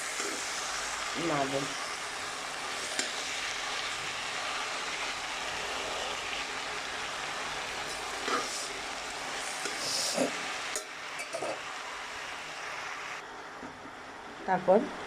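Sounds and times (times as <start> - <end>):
food sizzling in oil: 0.0 - 13.2.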